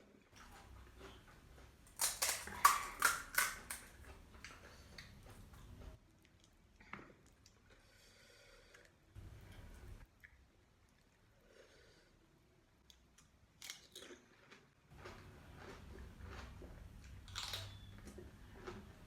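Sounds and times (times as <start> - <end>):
person chewing crisp food: 0.4 - 6.6, 13.6 - 19.0.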